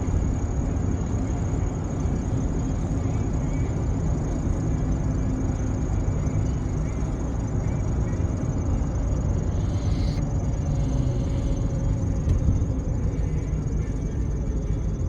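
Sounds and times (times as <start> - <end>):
car road and engine rumble: 0.0 - 15.0.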